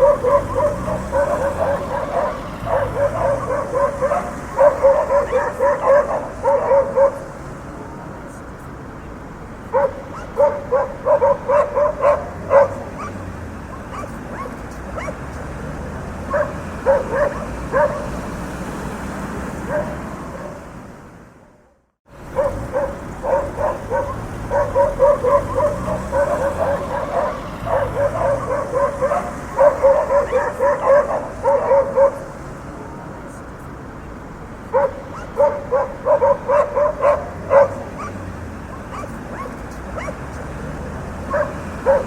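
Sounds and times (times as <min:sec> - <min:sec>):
dogs barking: 0:00.0 - 0:08.4, 0:09.6 - 0:20.9, 0:22.2 - 0:33.4, 0:34.5 - 0:42.0
street traffic hum: 0:00.0 - 0:42.0.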